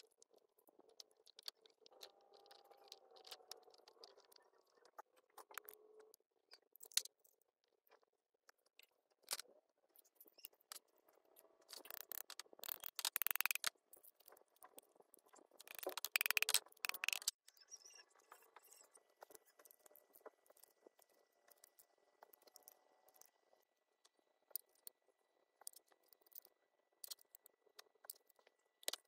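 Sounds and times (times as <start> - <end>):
hand tool clicking on metal: 15.7 - 17.3.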